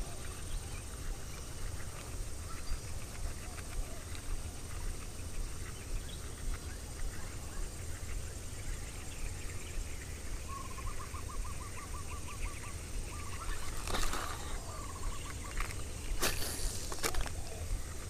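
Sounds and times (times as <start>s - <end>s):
bird calling rapidly: 9.3s - 17.9s.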